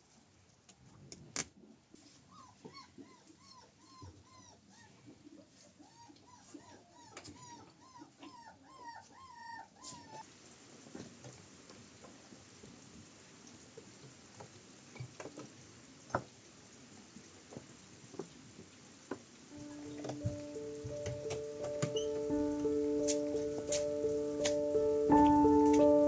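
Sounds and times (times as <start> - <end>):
faint rain patter: 0.0 - 26.0
dog whining: 2.3 - 5.0, 5.8 - 10.2, 19.9 - 24.0.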